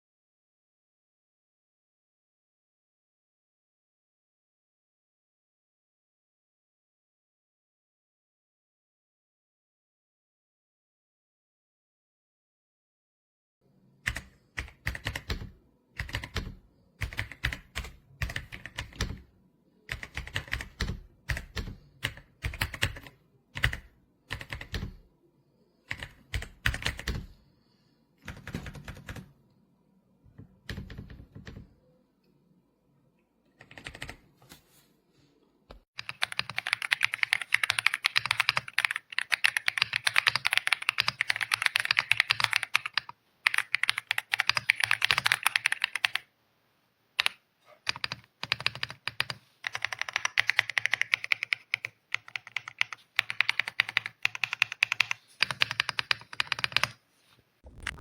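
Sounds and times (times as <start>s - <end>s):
typing on mechanical keyboard: 14.1s - 19.3s, 19.9s - 25.0s, 25.9s - 27.3s, 28.2s - 29.3s, 30.4s - 31.7s, 33.6s - 34.2s, 36.0s - 46.3s, 47.2s - 57.0s.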